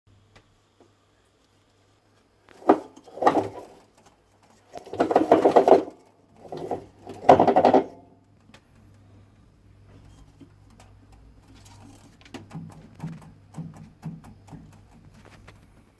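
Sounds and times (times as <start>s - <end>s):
washing machine low hum: 0.1s - 8.0s
washing machine rattling grind: 2.5s - 8.1s, 10.2s - 15.9s.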